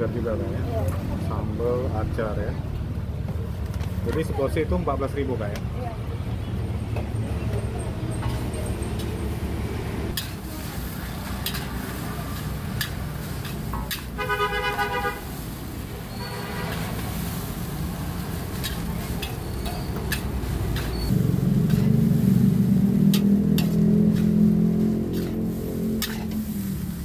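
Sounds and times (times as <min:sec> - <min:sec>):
gas burner roar: 0:08.2 - 0:27.0
metal clacks of wok stirring: 0:10.1 - 0:10.4, 0:11.3 - 0:14.2, 0:18.2 - 0:21.0, 0:23.0 - 0:26.5
vehicle horn honking: 0:14.2 - 0:15.3, 0:16.1 - 0:16.9.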